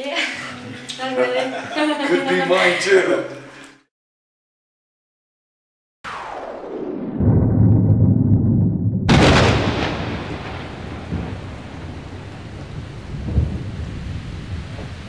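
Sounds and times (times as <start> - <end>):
thunderclap: 6.1 - 15.0.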